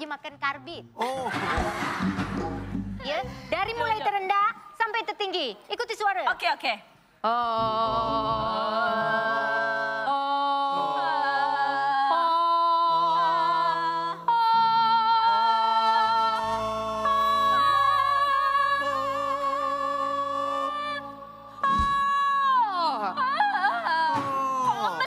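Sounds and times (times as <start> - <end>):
voices singing vocal exercise: 7.2 - 25.0.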